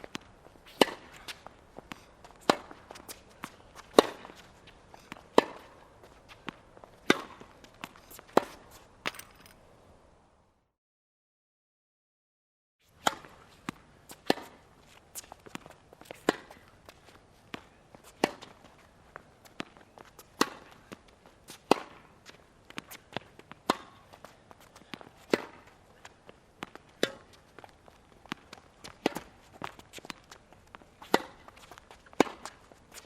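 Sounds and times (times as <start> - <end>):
tennis ball hit by rackets: 0.0 - 5.8, 6.4 - 9.2, 13.0 - 18.6, 19.5 - 33.0
footsteps on court: 13.0 - 33.0.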